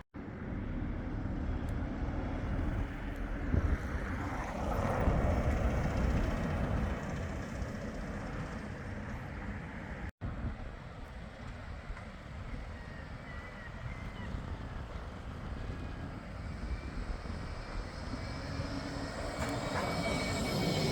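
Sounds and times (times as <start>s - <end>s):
street noise: 0.0s - 20.9s
tram rumbling past: 0.2s - 20.9s.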